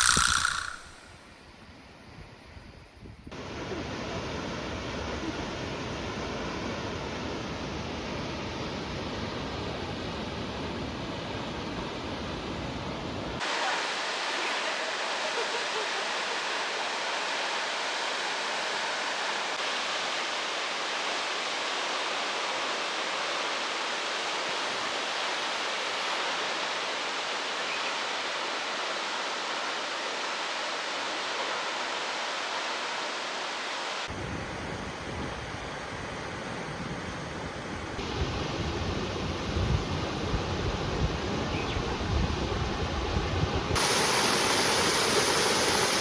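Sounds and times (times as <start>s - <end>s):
wind buffeting microphone: 34.1s - 46.0s
waterfall rushing: 43.8s - 46.0s.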